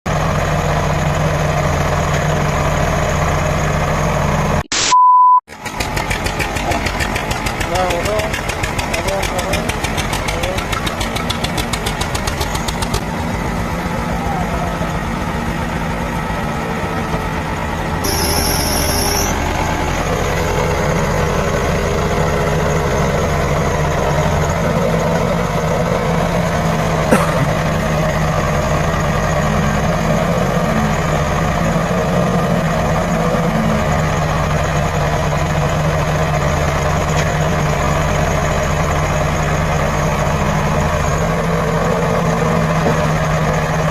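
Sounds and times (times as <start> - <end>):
diesel engine running: 0.1 - 4.6, 5.5 - 43.9
brief high whine: 4.7 - 5.4, 18.0 - 20.1.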